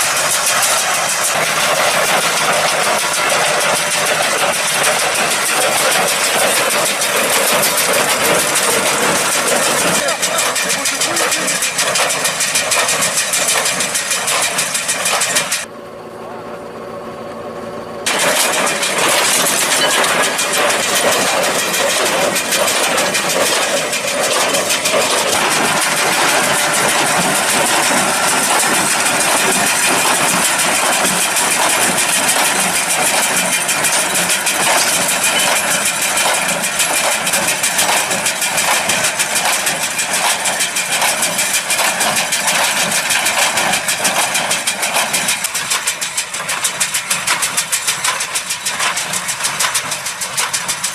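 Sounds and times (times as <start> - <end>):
tractor and baler working: 0.0 - 50.9.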